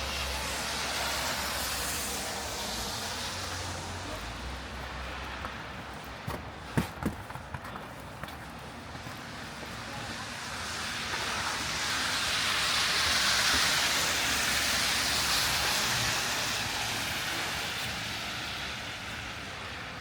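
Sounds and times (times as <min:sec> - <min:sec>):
tyres hissing on slush: 0:00.0 - 0:05.0, 0:09.3 - 0:20.0.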